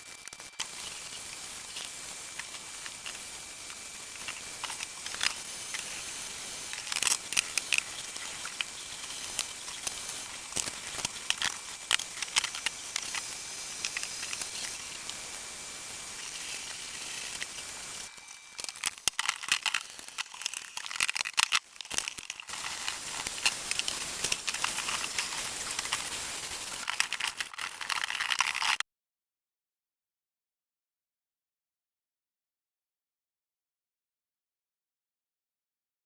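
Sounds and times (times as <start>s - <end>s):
steady hiss: 0.0s - 27.9s
rustling and crinkling: 18.5s - 28.8s.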